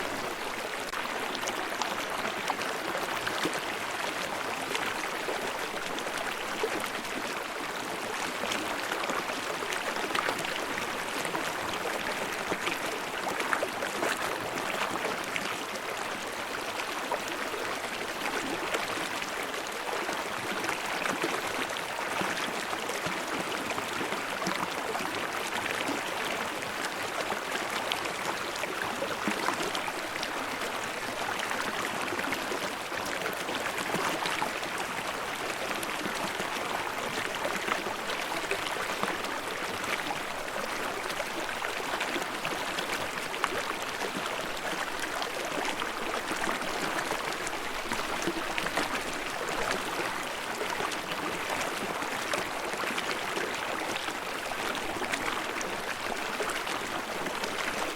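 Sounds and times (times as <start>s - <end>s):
stream babbling over rocks: 0.0s - 57.9s.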